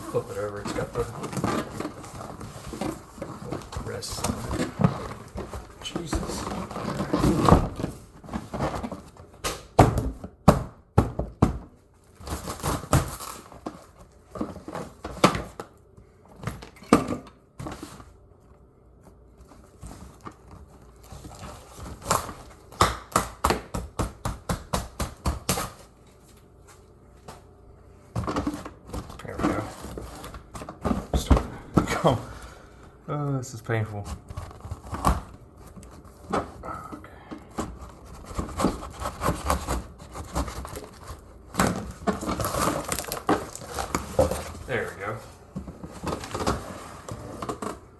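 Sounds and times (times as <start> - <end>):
packaging crinkling and tearing: 37.9 - 44.7.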